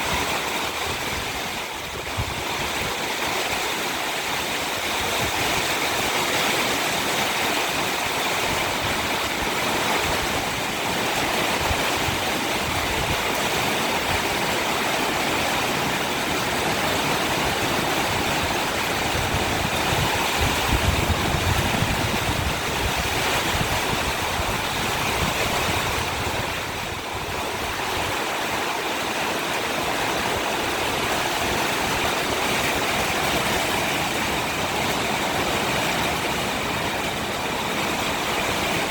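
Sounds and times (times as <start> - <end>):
heavy rain: 0.0 - 38.9
wind gusts buffeting microphone: 0.0 - 38.9.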